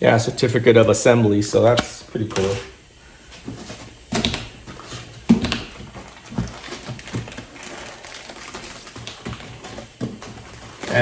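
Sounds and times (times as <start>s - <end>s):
packaging rustling: 3.3s - 11.0s.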